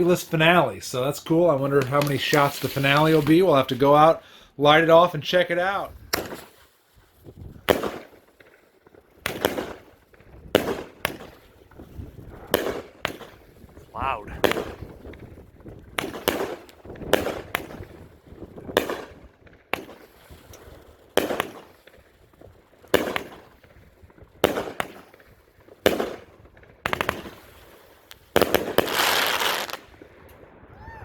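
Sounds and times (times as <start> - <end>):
fireworks aerial reports: 0.0 - 6.1, 12.0 - 15.4
fireworks launch thumps: 1.8 - 3.8, 6.1 - 6.7.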